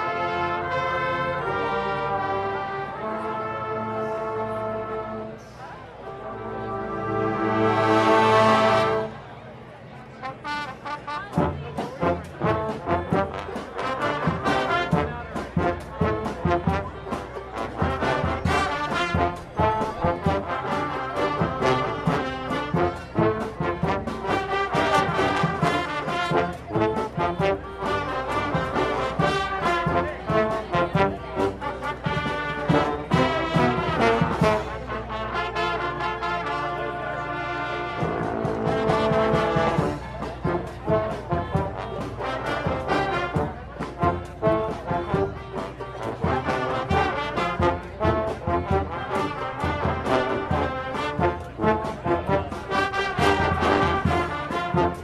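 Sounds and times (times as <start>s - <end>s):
brass band playing: 0.0s - 9.4s, 10.1s - 55.0s
drum beats: 11.2s - 35.0s, 37.9s - 55.0s.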